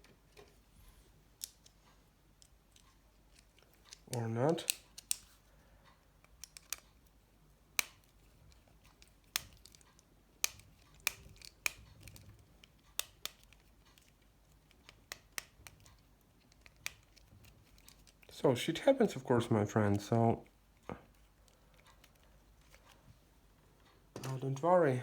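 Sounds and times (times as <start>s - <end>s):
screwdriver and plastic parts clicking: 2.4s - 5.4s, 6.2s - 7.0s, 7.8s - 18.3s.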